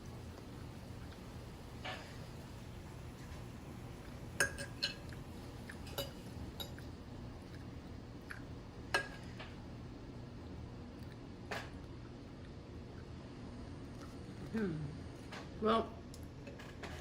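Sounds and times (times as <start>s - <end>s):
faint steady hum: 0.0s - 17.0s
cutlery clinking on a plate: 4.4s - 5.1s, 5.8s - 6.9s.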